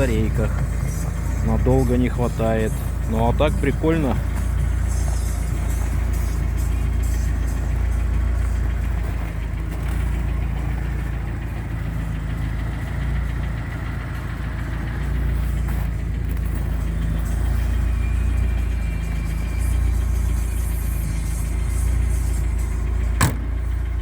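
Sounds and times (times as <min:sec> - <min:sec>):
car engine idling: 0:00.0 - 0:24.0
valve lifter knocking: 0:23.2 - 0:23.7.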